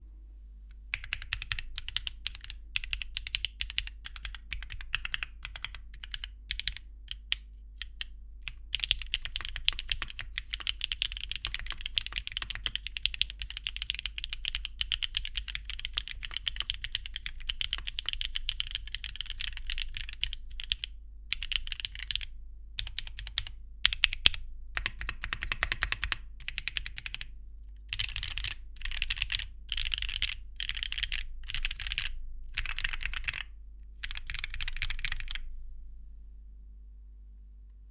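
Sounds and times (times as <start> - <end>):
mechanical keyboard typing: 1.0 - 27.3, 27.9 - 35.5.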